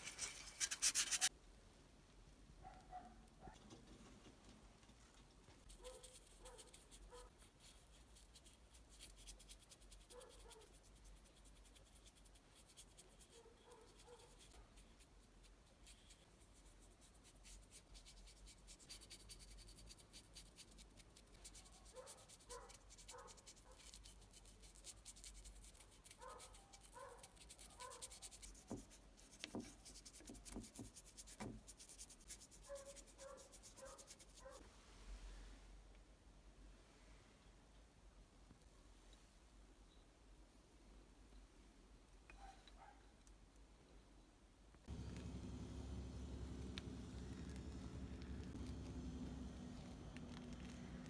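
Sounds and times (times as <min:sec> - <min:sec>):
faint scratching: 0:00.0 - 0:01.3.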